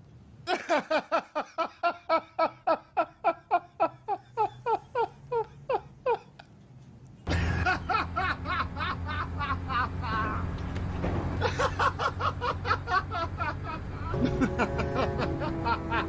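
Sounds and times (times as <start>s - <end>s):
chuckling: 0.5s - 6.6s, 7.3s - 10.6s, 11.4s - 16.0s
rhythmic laughter: 11.4s - 16.0s.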